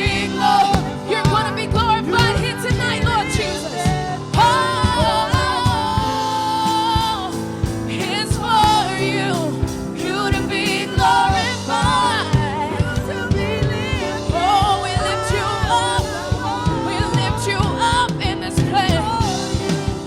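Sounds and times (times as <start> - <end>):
keyboard chords: 0.0 - 20.0
singers holding long notes: 0.0 - 20.0.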